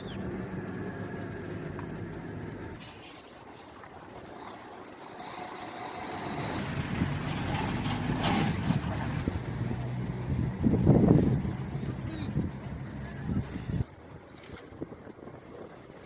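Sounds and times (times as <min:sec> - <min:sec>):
vehicle engine running: 0:00.0 - 0:02.8, 0:04.2 - 0:13.9
traffic noise: 0:00.0 - 0:14.4.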